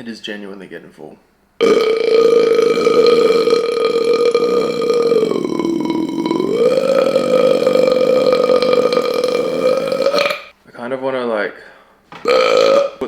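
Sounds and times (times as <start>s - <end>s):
man burping: 1.6s - 10.5s, 12.2s - 13.0s.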